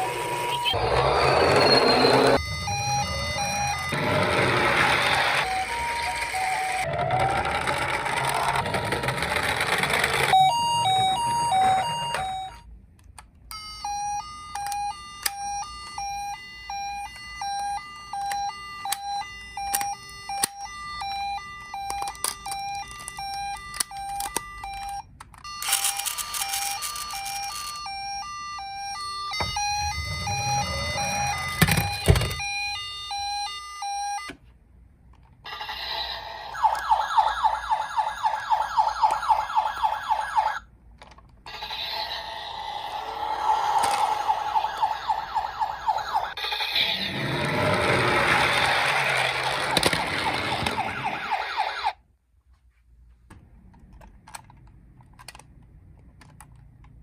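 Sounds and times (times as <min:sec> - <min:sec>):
fast repeating siren wail: 0:00.0 - 0:12.6, 0:27.9 - 0:33.6, 0:35.5 - 0:40.7, 0:41.5 - 0:52.0
two-tone toy siren: 0:00.0 - 0:12.7, 0:13.5 - 0:34.4, 0:35.5 - 0:40.7, 0:41.5 - 0:52.0.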